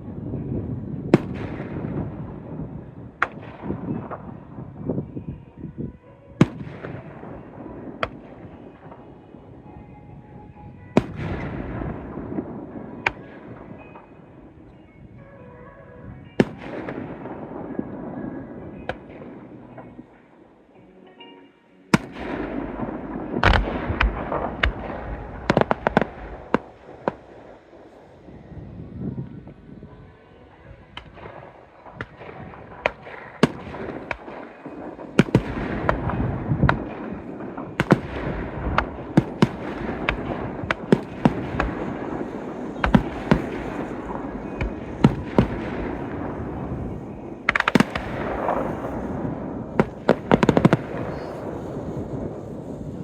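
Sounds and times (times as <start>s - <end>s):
fireworks bangs: 0.0s - 5.3s, 6.4s - 14.7s, 16.4s - 20.3s, 21.9s - 53.0s.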